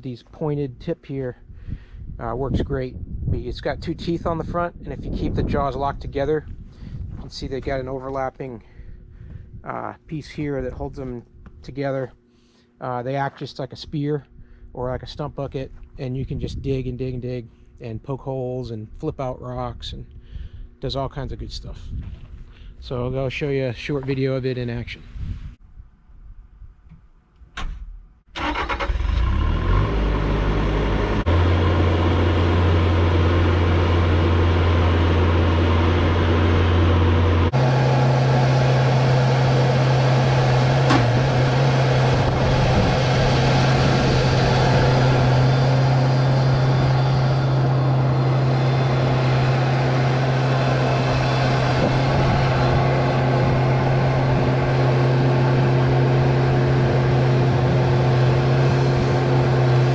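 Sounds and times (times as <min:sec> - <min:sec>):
diesel engine running: 0:28.4 - 0:59.9.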